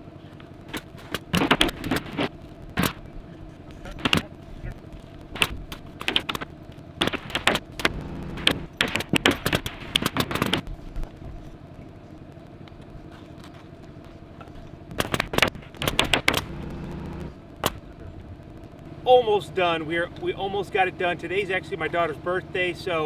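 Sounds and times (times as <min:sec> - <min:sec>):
steady low hum: 0:00.0 - 0:23.0
sharp knocks and clicks: 0:00.4 - 0:03.1, 0:03.7 - 0:11.4, 0:12.6 - 0:17.9.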